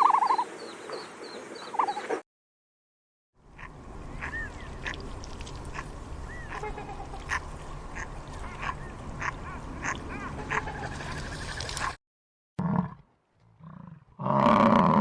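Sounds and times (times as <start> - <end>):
waterfowl quacking and honking: 3.6 - 5.0, 5.7 - 11.9.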